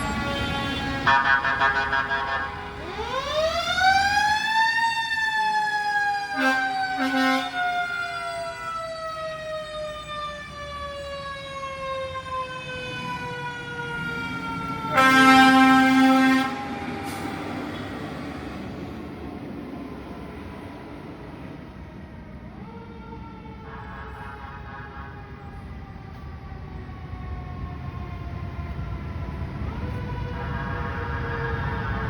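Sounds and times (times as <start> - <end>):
air horn blast: 0.0 - 2.8, 6.4 - 7.6, 14.9 - 16.8, 23.6 - 25.3.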